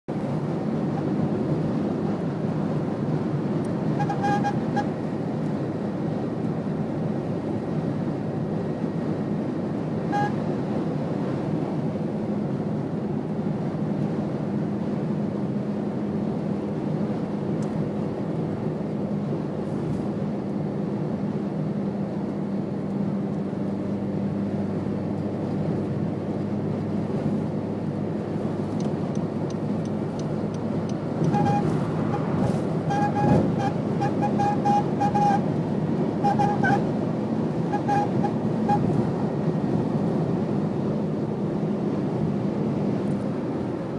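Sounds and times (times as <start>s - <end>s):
car engine rumble: 0.1s - 43.9s.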